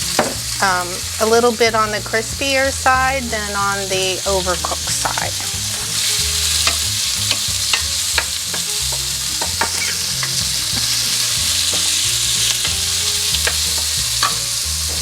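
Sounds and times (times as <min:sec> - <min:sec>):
vegetables sizzling in a frying pan: 0:00.0 - 0:15.0
utensil scraping against pan: 0:05.0 - 0:15.0.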